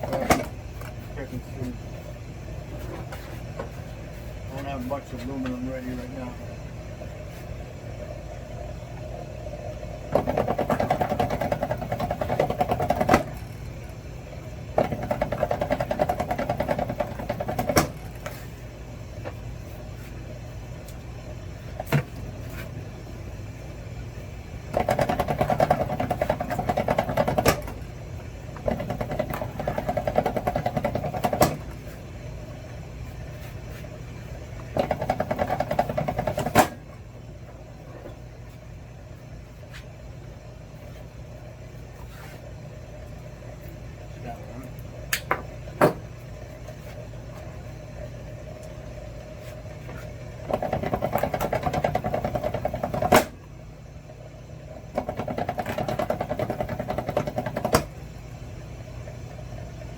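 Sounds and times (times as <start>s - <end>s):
steady low hum: 0.0s - 59.9s
wire-stripping machine running: 8.8s - 19.4s, 24.3s - 32.2s, 34.5s - 37.0s, 50.3s - 53.6s, 54.6s - 59.9s.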